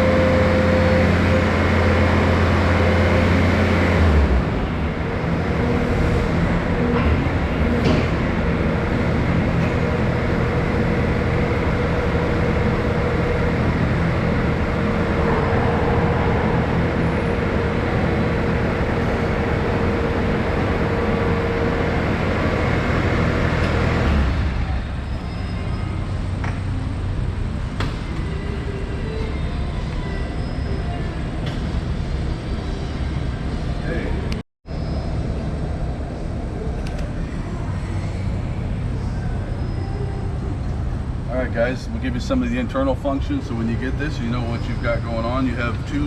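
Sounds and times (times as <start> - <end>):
steady whine: 0.0 - 23.0
diesel engine running hard: 0.0 - 46.0.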